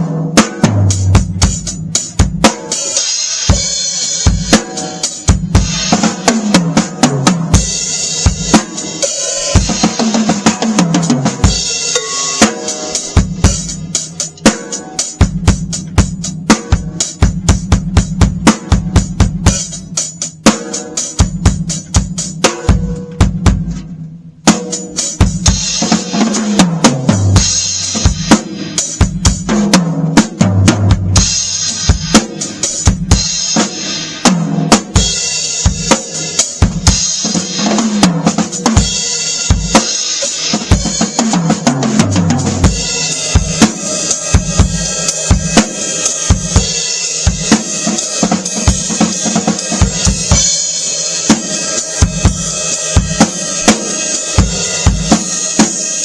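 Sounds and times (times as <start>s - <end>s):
drum kit groove: 0.0s - 56.0s.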